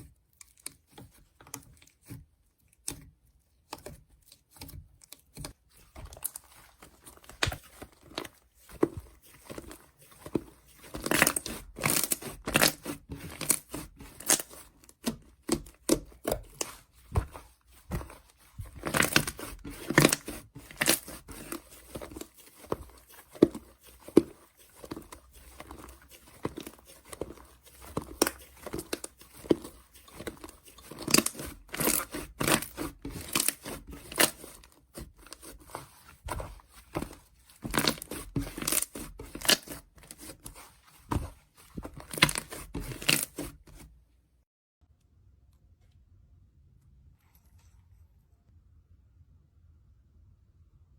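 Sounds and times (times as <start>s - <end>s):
slime crackling and popping: 30.3s - 34.4s.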